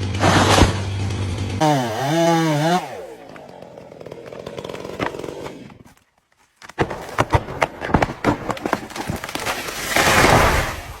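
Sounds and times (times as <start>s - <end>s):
wood cracking and snapping: 6.6s - 11.0s
tree crashing down: 6.8s - 11.0s.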